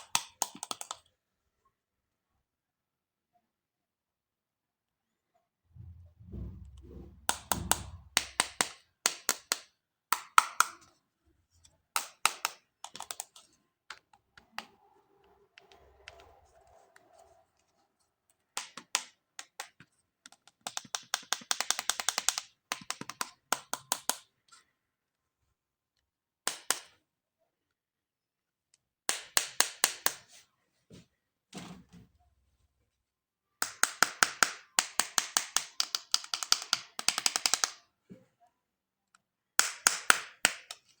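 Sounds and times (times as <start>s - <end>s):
plastic toys clicking and tapping: 0.0s - 1.1s, 8.2s - 11.0s, 11.9s - 14.2s, 18.6s - 24.3s, 33.6s - 37.9s, 39.6s - 41.0s.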